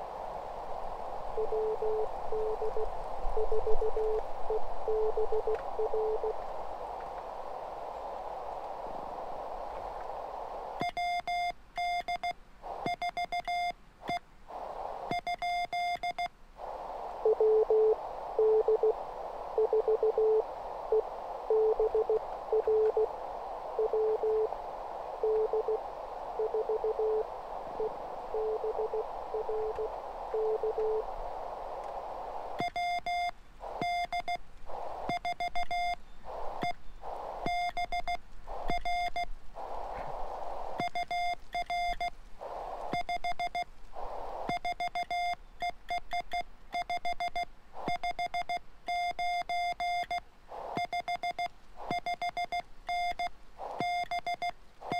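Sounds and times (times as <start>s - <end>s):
radio band hiss: 0.0s - 11.4s, 12.6s - 13.2s, 14.0s - 46.1s, 47.7s - 54.9s
lower-pitched morse code: 1.4s - 6.4s, 17.2s - 19.0s, 19.6s - 23.1s, 23.8s - 24.5s, 25.2s - 25.8s, 26.4s - 31.0s.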